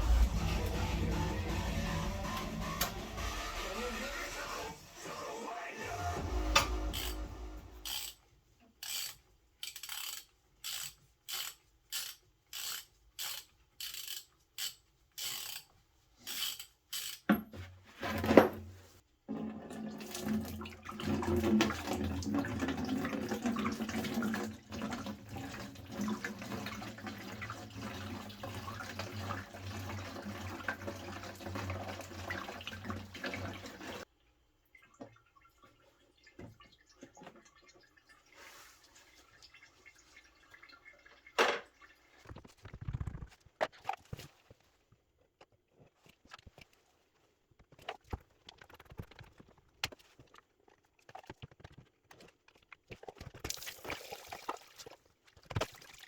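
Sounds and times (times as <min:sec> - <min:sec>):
fluid pouring in a stream: 0:53.1 - 0:56.0.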